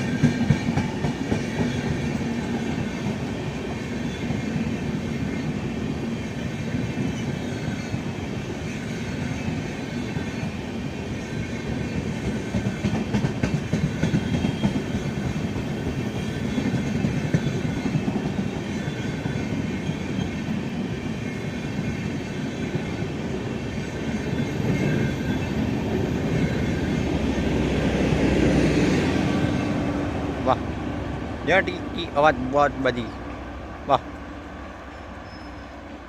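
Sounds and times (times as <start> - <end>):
train wheels clattering over rail joints: 0.0 - 2.9, 12.0 - 20.3.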